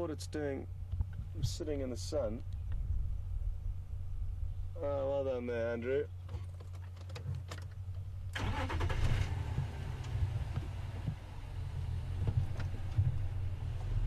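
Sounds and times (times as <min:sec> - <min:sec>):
vehicle engine revving: 0:08.4 - 0:14.0.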